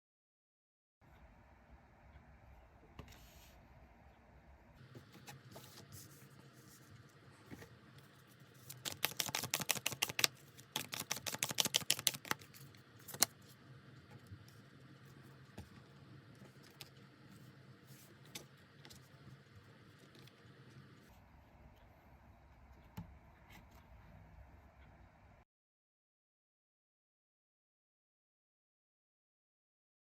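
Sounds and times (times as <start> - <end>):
cards being shuffled: 8.5 - 13.4.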